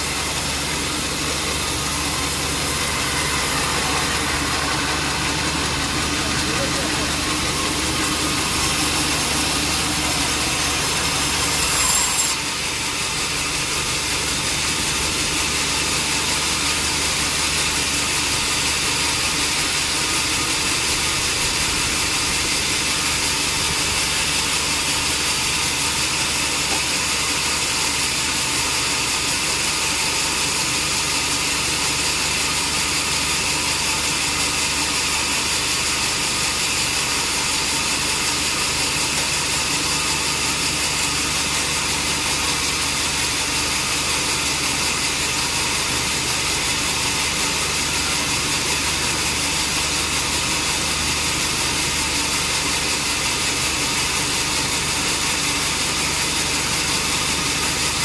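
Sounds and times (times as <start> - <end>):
sawmill saw cutting log: 0.0 - 58.0.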